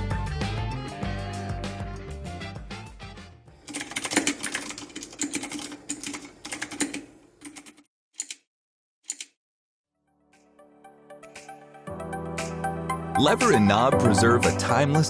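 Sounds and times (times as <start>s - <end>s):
background music: 0.0s - 3.6s, 10.1s - 15.0s
typing on metal mechanical keyboard: 3.7s - 8.4s, 9.1s - 9.3s.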